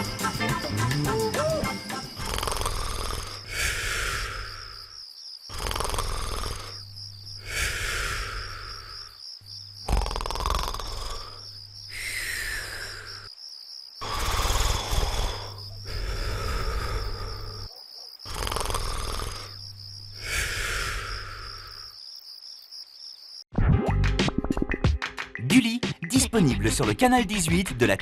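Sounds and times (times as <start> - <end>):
crickets chirring: 0.0 - 23.5
cartoon snoring: 1.5 - 4.9, 5.5 - 9.1, 9.8 - 13.3, 14.0 - 19.6, 20.2 - 21.8.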